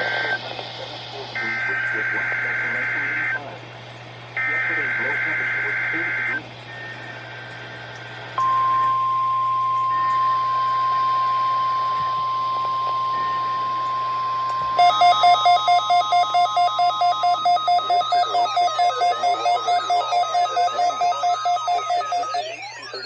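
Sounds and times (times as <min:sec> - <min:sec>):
radio hiss: 0:00.0 - 0:09.1, 0:09.9 - 0:23.0
steady single-pitch alarm tone: 0:01.4 - 0:03.4, 0:08.4 - 0:23.0
warbling electronic beep alarm: 0:01.4 - 0:03.4, 0:04.4 - 0:07.3, 0:08.4 - 0:23.0.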